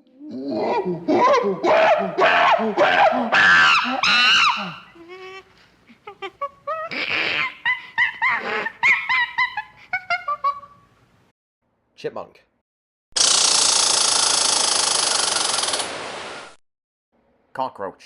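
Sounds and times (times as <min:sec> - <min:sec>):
chimpanzee hooting and screaming: 0:00.5 - 0:05.4, 0:06.1 - 0:10.8.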